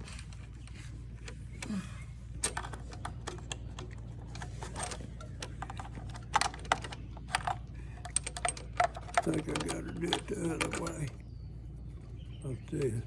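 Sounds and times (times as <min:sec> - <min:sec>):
low hum: 0:00.0 - 0:13.0
small metal parts clicking: 0:02.4 - 0:11.2.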